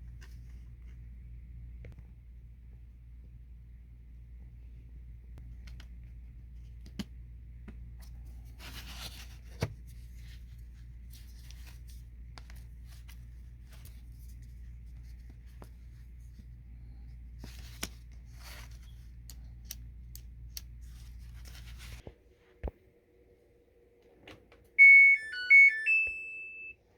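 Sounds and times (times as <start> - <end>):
handling rustles: 7.7 - 19.7, 20.7 - 22.2.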